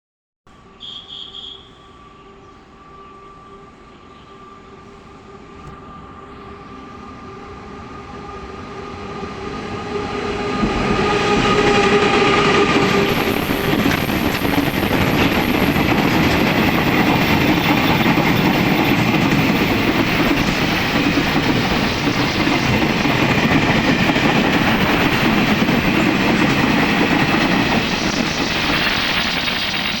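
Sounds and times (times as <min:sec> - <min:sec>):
locomotive steady tones: 0:00.5 - 0:30.0
freight wagons rumbling on rails: 0:09.9 - 0:30.0.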